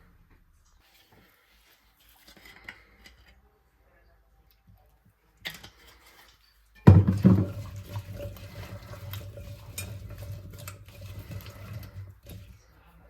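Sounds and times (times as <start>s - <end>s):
water running into a sink: 6.9s - 12.6s.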